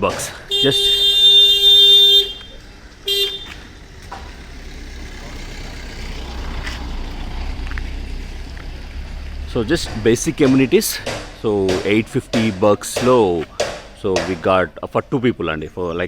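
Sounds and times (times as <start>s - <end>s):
vehicle horn toots: 0.4s - 3.7s.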